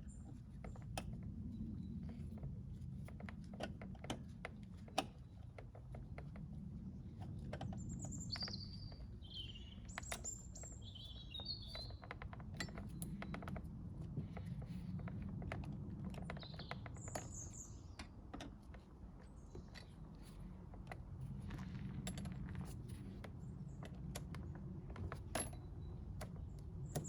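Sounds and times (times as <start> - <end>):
birds chirping: 7.8 - 12.1.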